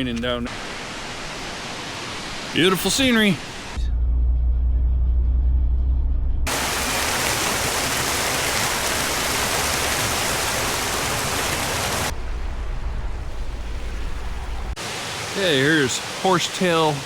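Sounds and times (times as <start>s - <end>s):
waterfall roaring: 6.5s - 17.0s.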